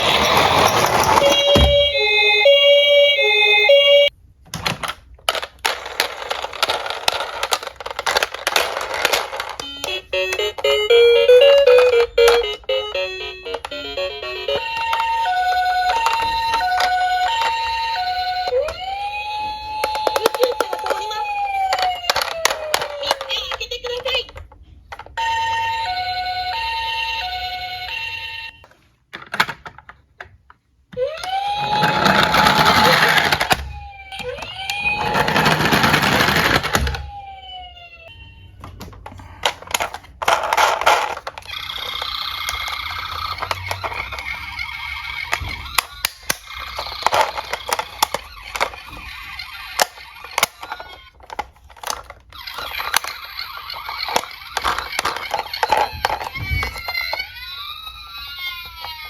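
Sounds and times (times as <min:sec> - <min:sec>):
toy cars rolling and rattling: 0:00.0 - 0:02.1, 0:04.5 - 0:37.5, 0:38.4 - 0:59.0
two-tone ambulance siren: 0:00.0 - 0:04.1, 0:09.6 - 0:23.3, 0:25.2 - 0:28.6, 0:31.0 - 0:38.9.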